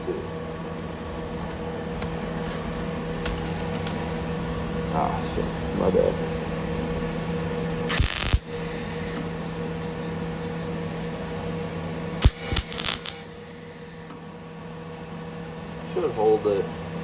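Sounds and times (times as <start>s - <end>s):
steady electrical hum: 0.0s - 17.0s
welding crackles and pops: 7.8s - 9.3s, 12.1s - 14.1s.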